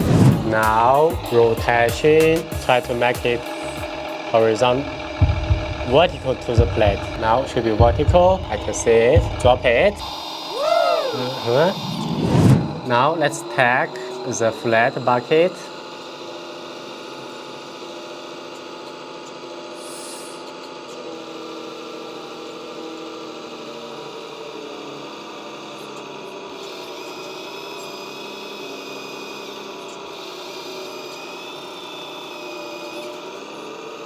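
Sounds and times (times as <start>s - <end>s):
higher whine: 0.0s - 17.3s
electric oil pumps humming and whining: 0.0s - 34.0s.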